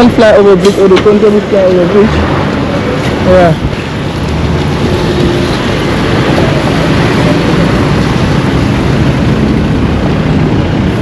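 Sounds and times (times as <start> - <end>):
road rumble: 0.0 - 11.0
vehicle engine running close: 0.8 - 11.0.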